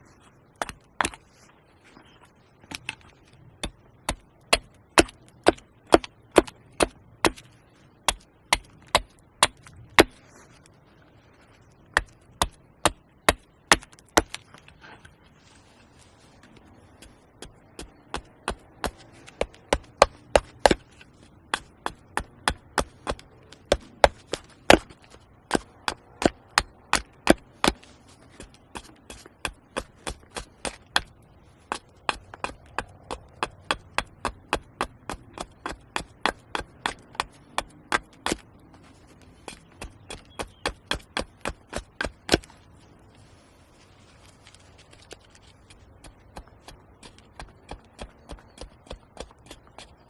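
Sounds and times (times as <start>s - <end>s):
chopping into wood: 3.6s - 10.1s, 17.4s - 20.9s, 21.5s - 38.5s, 39.4s - 42.5s.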